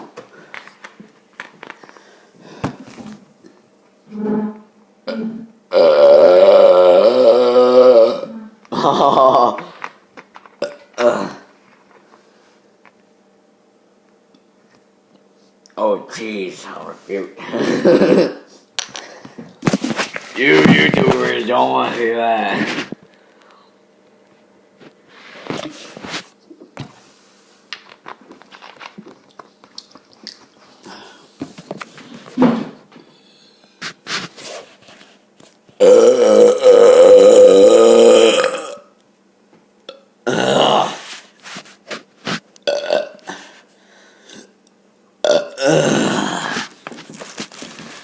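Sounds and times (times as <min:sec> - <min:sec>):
person burping: 0:05.0 - 0:09.8, 0:10.6 - 0:11.5, 0:17.4 - 0:18.5, 0:35.8 - 0:39.0, 0:39.9 - 0:41.0, 0:42.6 - 0:43.5, 0:45.2 - 0:46.8
mouth clicks and smacks: 0:27.8 - 0:30.6.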